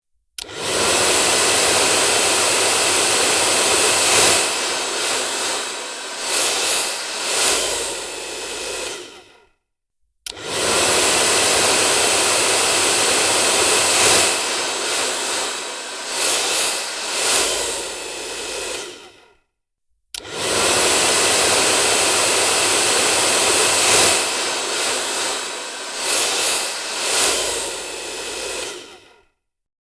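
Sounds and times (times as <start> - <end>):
hair dryer switch click: 0.4 - 0.7, 10.3 - 10.6, 20.2 - 20.4
hair dryer blowing air: 0.4 - 9.4, 10.3 - 19.3, 20.2 - 29.2.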